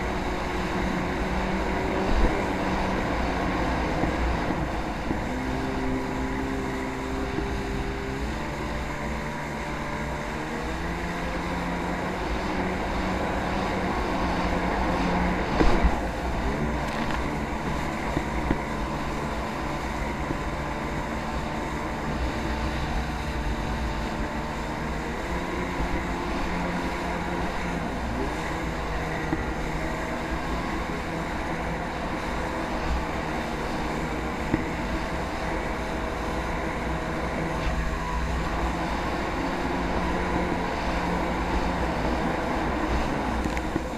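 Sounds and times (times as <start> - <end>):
jet ski engine running: 0.0 - 43.9
wind noise on microphone: 0.0 - 43.9.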